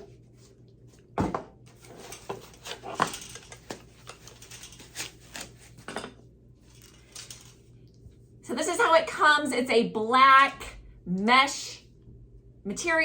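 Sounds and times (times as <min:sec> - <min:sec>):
package rustling and clattering: 0:01.2 - 0:07.7.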